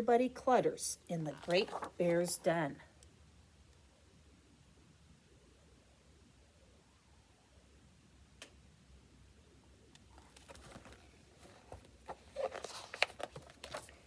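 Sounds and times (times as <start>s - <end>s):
book pages rustling: 1.2s - 2.6s, 10.1s - 14.0s.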